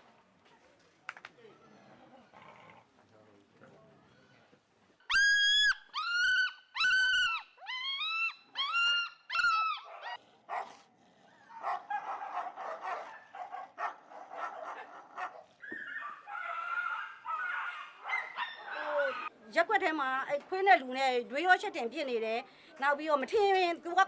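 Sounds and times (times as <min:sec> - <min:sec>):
dog yelping: 0:05.1 - 0:10.7, 0:11.5 - 0:19.3.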